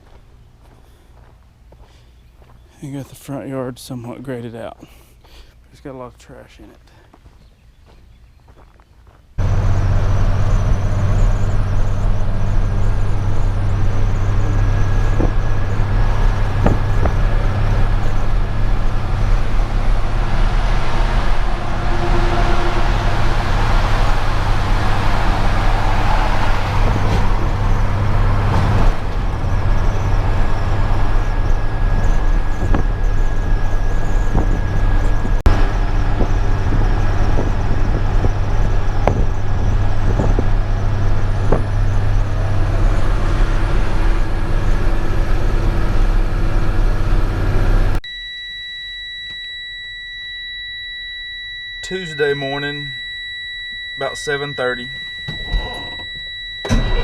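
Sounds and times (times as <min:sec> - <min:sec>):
road and tyre noise: 0:08.8 - 0:48.0
vehicle engine drone: 0:09.4 - 0:48.0, 0:48.7 - 0:57.0.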